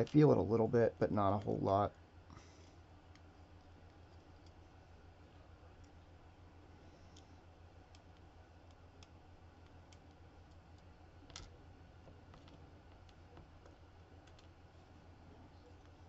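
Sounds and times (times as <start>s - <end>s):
low steady hum: 0.0s - 16.0s
small metal parts clicking: 14.2s - 14.5s.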